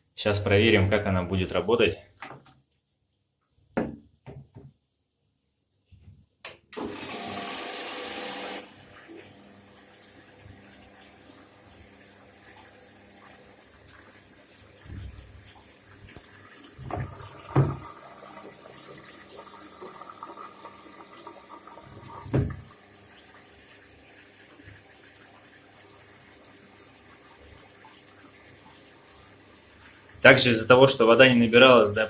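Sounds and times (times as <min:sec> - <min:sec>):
washing machine thump: 0:03.8 - 0:04.7, 0:16.8 - 0:17.8, 0:22.2 - 0:22.7
water rushing into washing machine: 0:06.7 - 0:30.5.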